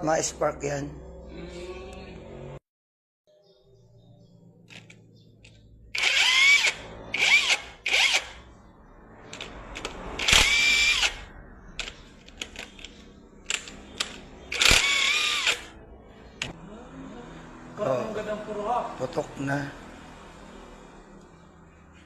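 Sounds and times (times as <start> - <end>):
drill clicks: 4.7 - 8.4, 9.3 - 15.7
electric drill motor whining: 6.0 - 8.4, 10.2 - 11.3, 14.5 - 15.7.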